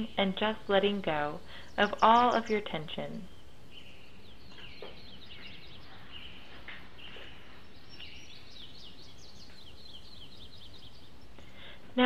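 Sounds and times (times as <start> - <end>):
low background noise: 0.0 - 12.0
songbirds chirping: 0.0 - 12.0.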